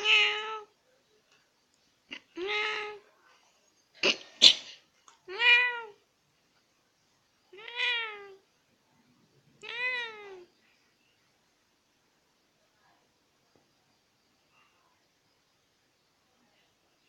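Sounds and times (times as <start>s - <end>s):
cat meowing: 0.0s - 0.7s, 5.3s - 6.0s, 7.6s - 8.4s, 9.6s - 10.5s.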